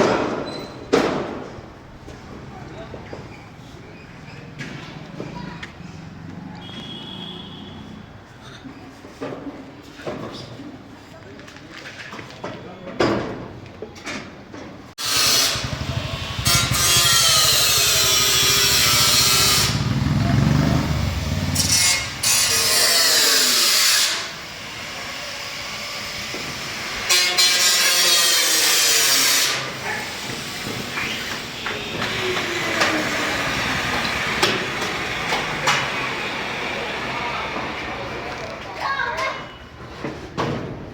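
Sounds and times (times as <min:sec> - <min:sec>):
power tool cutting: 0:15.0 - 0:38.1.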